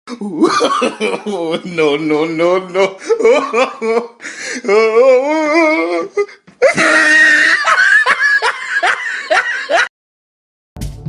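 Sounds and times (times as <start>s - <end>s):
loud laughter: 0.3s - 1.8s, 2.4s - 4.2s, 6.6s - 9.9s.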